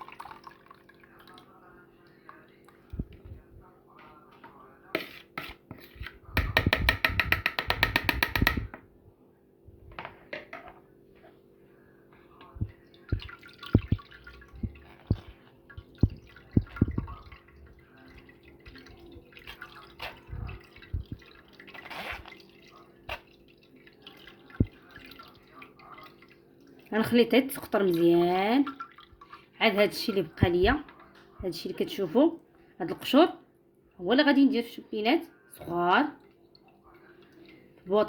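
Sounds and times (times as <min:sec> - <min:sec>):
syrup dripping through strainer: 0:13.0 - 0:26.7.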